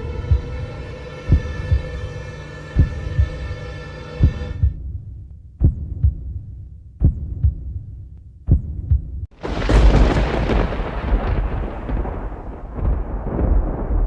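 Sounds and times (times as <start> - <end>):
droning tone: 0.0 - 4.9
heartbeat thumps: 0.0 - 9.3, 12.8 - 13.7
loud rumbling crash: 9.4 - 14.0.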